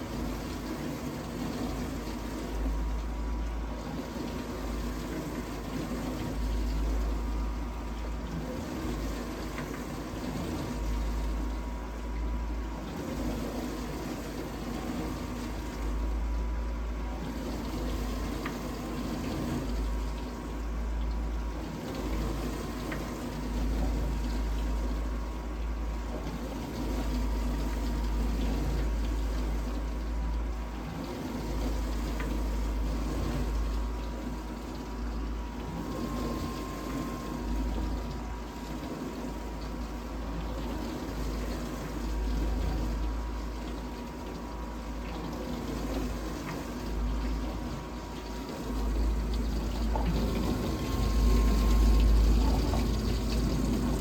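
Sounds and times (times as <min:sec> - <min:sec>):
dishwasher pump motor hum: 0:00.0 - 0:54.0
water sloshing and spraying: 0:17.1 - 0:54.0.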